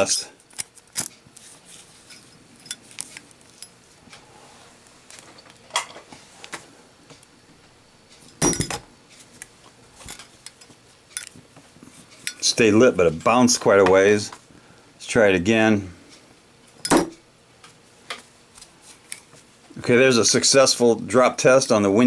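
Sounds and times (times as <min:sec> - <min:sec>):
light metal handling clicks: 0:10.1 - 0:11.4.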